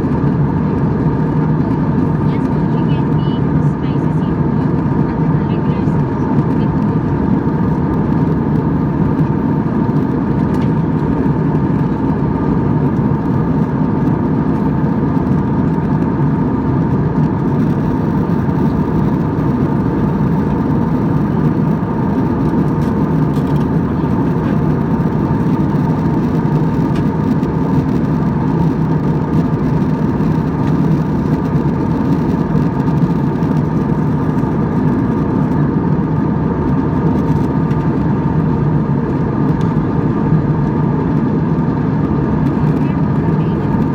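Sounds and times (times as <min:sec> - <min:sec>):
jet engines drone in cabin: 0:00.0 - 0:43.9.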